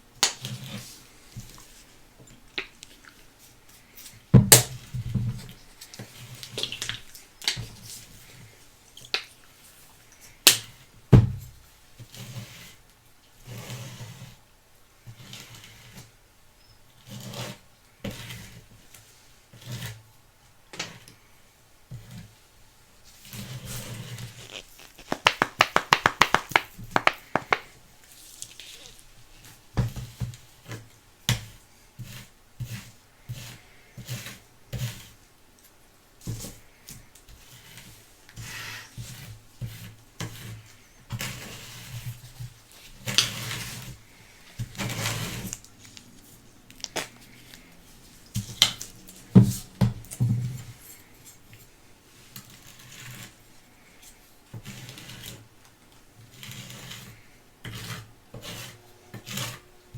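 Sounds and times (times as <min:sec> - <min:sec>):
hands handling plastic and cardboard: 0:24.4 - 0:29.0
sharp clicks: 0:24.5 - 0:27.7.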